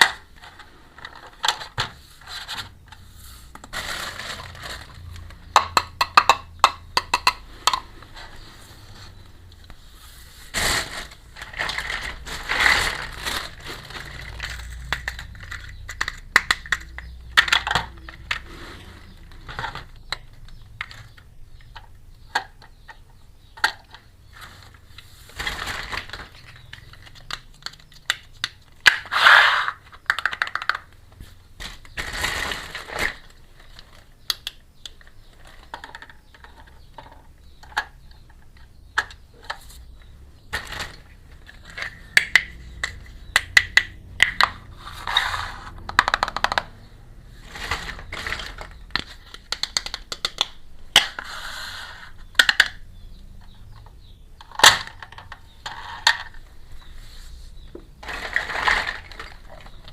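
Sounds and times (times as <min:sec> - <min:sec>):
plastic toy pieces clattering: 0:00.0 - 0:07.9, 0:10.5 - 0:18.5, 0:19.2 - 0:23.0, 0:25.3 - 0:31.0, 0:31.6 - 0:39.6, 0:40.5 - 0:46.8, 0:47.4 - 0:51.5, 0:52.3 - 0:52.8, 0:54.4 - 0:56.5, 0:58.0 - 0:59.9
packaging crinkling: 0:03.6 - 0:05.4, 0:10.5 - 0:15.7.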